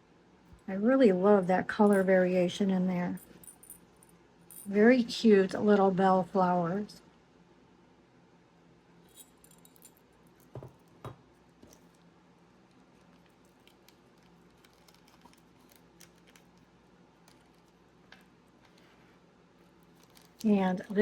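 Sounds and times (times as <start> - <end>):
low room hum: 0.0 - 21.0
glass beads handled: 3.2 - 4.7, 9.0 - 12.0, 12.8 - 18.9, 19.7 - 21.0
soft knocks: 10.6 - 11.2.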